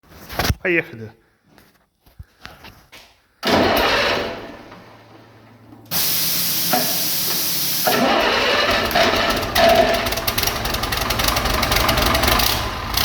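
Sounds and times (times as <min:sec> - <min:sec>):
diesel engine starting burst: 0:03.4 - 0:13.0
low engine running note: 0:03.6 - 0:13.0
loud steady hissing rush: 0:05.9 - 0:07.9.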